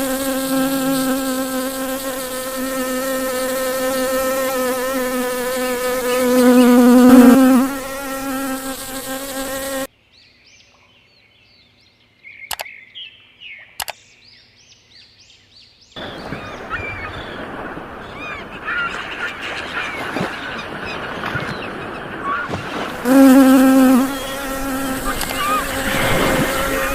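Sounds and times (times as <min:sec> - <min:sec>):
bee buzzing: 0:00.0 - 0:09.9, 0:22.7 - 0:26.9
sharp clicks: 0:12.5 - 0:12.7, 0:13.8 - 0:14.0
hissing background: 0:16.0 - 0:26.9.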